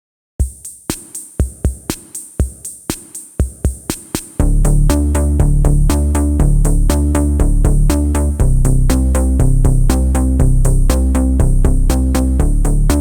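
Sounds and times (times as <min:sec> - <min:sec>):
drum machine beat: 0:00.4 - 0:13.0
heavy bass: 0:04.4 - 0:13.0
synth chords: 0:04.4 - 0:13.0.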